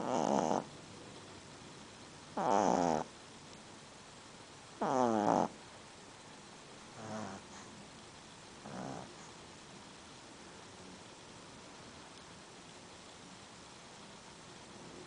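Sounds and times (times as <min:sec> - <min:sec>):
dog snoring: 0:00.0 - 0:00.7, 0:02.3 - 0:03.1, 0:04.8 - 0:05.6, 0:06.9 - 0:07.8, 0:08.6 - 0:09.4.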